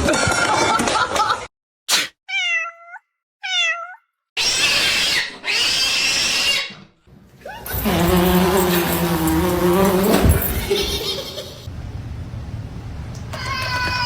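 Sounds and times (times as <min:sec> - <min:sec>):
cat meowing: 0:02.3 - 0:04.1.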